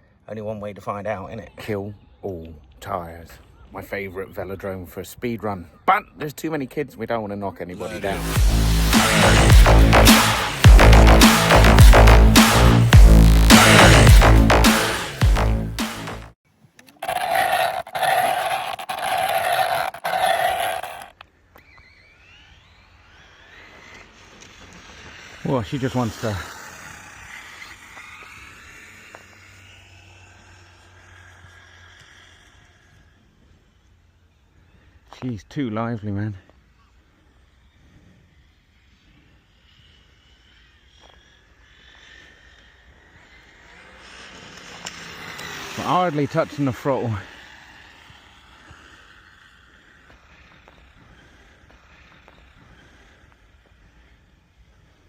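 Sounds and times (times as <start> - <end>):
rough engine growl from speaker: 7.8 - 15.8, 41.4 - 51.6
electric motor whine: 17.0 - 33.9, 38.3 - 54.2
faint rising whine: 17.9 - 34.8.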